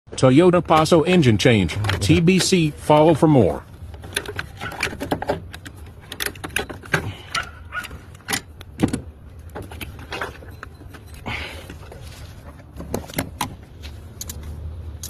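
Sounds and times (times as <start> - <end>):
metallic clinks and knocks: 3.9 - 12.0.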